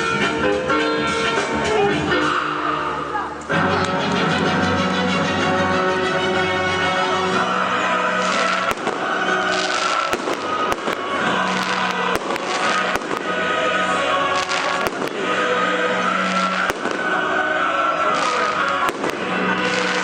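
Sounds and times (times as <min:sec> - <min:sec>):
music playing: 0:00.0 - 0:20.0
firework bangs and crackling: 0:07.0 - 0:20.0.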